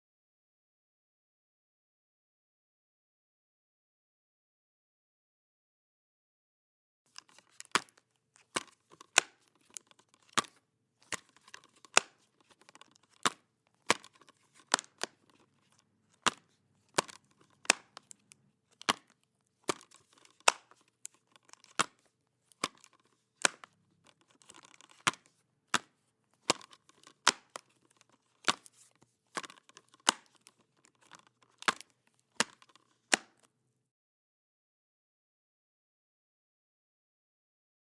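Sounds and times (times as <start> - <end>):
plastic disc case clicking shut: 7.1 - 33.5.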